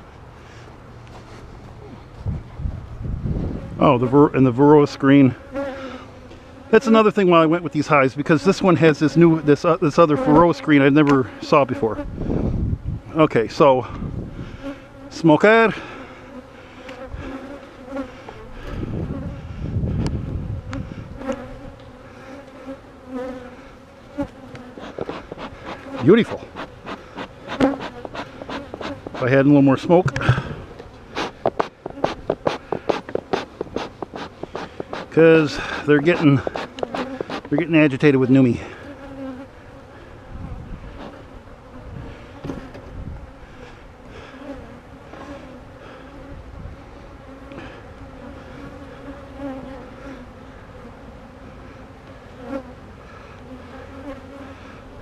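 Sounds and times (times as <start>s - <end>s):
bees buzzing: 3.4s - 13.1s, 14.1s - 55.0s
faint knocks of hive equipment: 42.4s - 42.9s.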